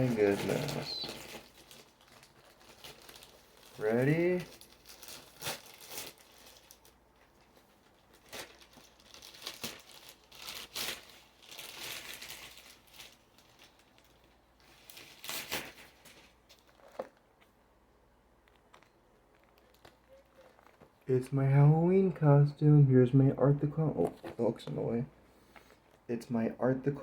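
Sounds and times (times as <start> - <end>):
packaging crinkling and rustling: 0.0 - 17.6, 18.3 - 21.1.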